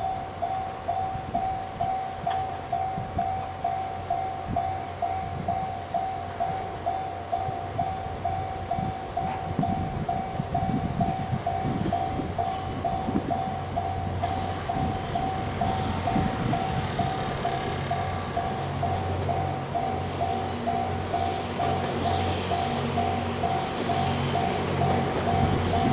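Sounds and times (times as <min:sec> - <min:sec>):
level crossing alarm dinging: 0:00.0 - 0:25.9
train rumbling past: 0:00.0 - 0:25.9
train wheels clacking: 0:06.9 - 0:25.9.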